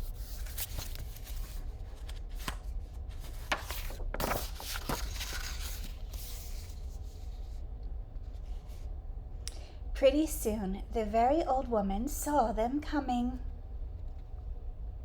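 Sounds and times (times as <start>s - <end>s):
paper pages rustling: 0.1s - 6.9s
paper flicks and snaps: 0.4s - 2.7s.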